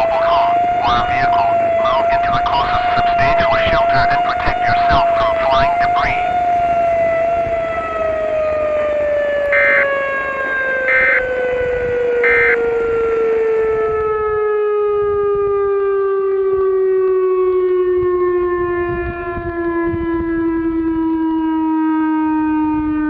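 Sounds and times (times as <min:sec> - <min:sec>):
warning siren winding down: 0:00.0 - 0:23.0
short beeps: 0:09.6 - 0:09.9, 0:12.2 - 0:12.6.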